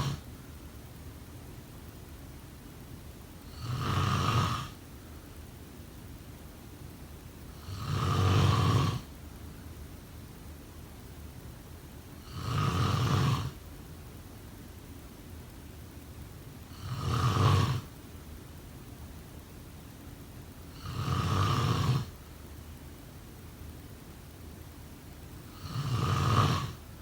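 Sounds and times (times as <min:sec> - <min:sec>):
person snoring: 0:00.0 - 0:00.2, 0:03.5 - 0:04.8, 0:07.6 - 0:09.1, 0:12.2 - 0:13.6, 0:16.7 - 0:17.9, 0:20.8 - 0:22.1, 0:25.5 - 0:26.8
faint steady hiss: 0:00.0 - 0:27.0.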